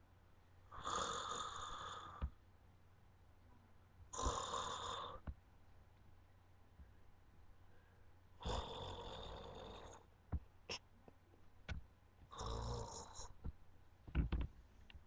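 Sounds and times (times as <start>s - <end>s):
person snoring: 0.7s - 2.4s, 4.1s - 5.3s, 8.4s - 10.0s, 12.3s - 13.4s.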